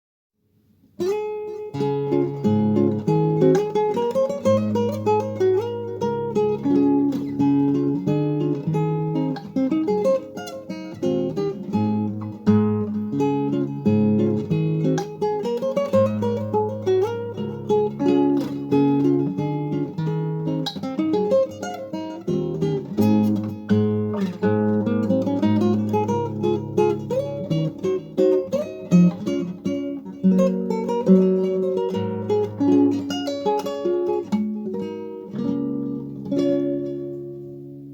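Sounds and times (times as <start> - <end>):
classical guitar playing: 0.8 - 37.9.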